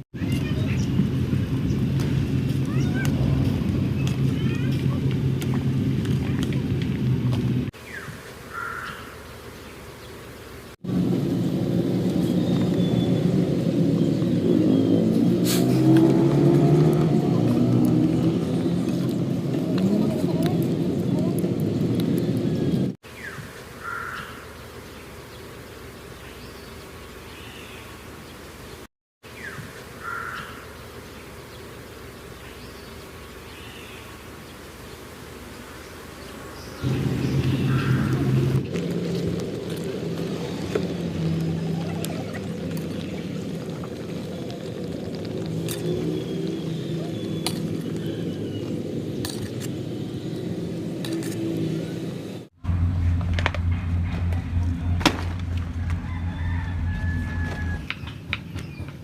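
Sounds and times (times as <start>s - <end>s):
engine rumbling: 0.0s - 7.8s, 10.8s - 23.0s, 34.9s - 59.0s
insect buzz: 7.7s - 17.0s, 23.1s - 52.2s
bird calls: 7.8s - 10.2s, 21.0s - 52.4s.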